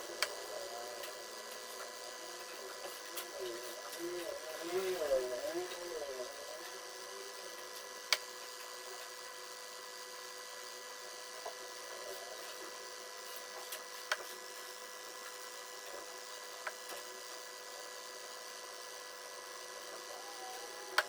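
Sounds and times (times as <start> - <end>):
electrical hum: 0.0 - 21.0.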